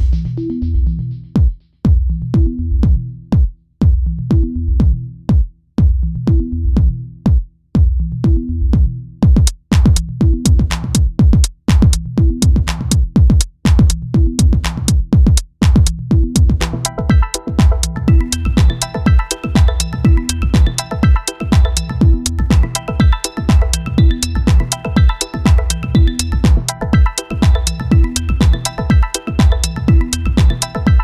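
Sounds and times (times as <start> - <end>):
electronic dance music: 15.6 - 31.0.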